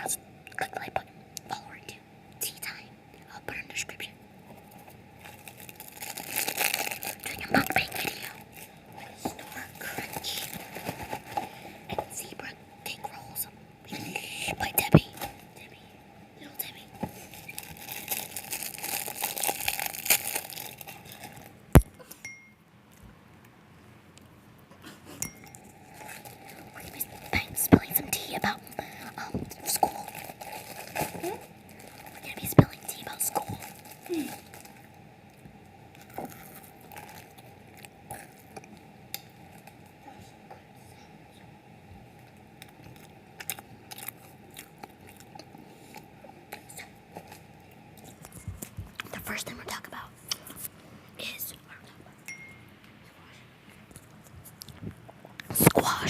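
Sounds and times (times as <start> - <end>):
faint steady hum: 0.0 - 56.0
eating crunches and chewing: 4.5 - 12.2, 17.0 - 21.9, 25.5 - 40.0, 42.1 - 49.2, 53.7 - 56.0
plastic wrapper crinkling: 4.7 - 12.2, 16.7 - 21.9, 25.7 - 35.0, 35.9 - 38.6
faint clinks: 25.2 - 26.2, 52.2 - 52.8.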